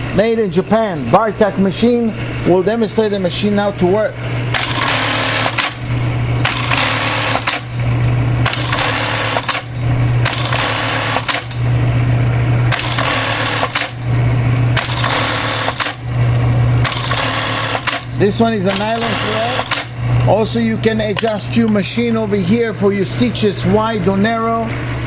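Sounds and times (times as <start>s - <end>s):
sewing machine rapid stitching: 4.5s - 7.8s, 8.4s - 11.6s, 12.7s - 14.0s, 14.8s - 16.1s, 16.8s - 20.0s
sewing machine motor hum: 4.5s - 21.3s.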